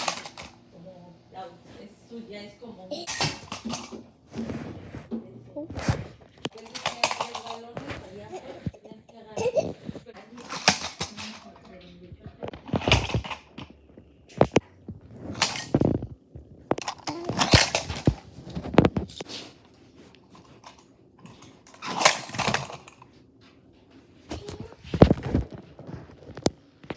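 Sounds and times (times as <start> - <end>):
toy cars crashing: 0.0 - 0.6, 2.9 - 4.0, 6.5 - 8.1, 10.4 - 11.6, 15.2 - 15.9, 16.8 - 18.4, 20.3 - 23.0.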